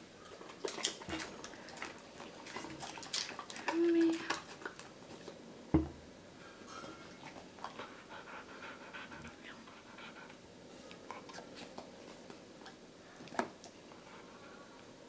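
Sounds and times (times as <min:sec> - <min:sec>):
dog panting softly: 0:07.0 - 0:15.0.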